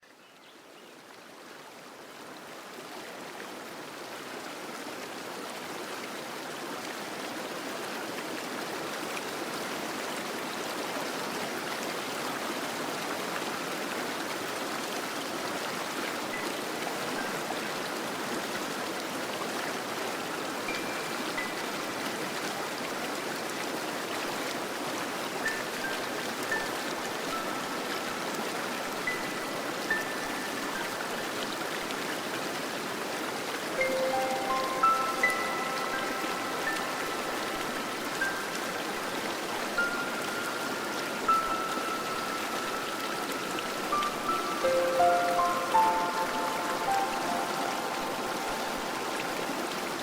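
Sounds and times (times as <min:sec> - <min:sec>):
fountain water splashing: 0:02.0 - 0:50.0.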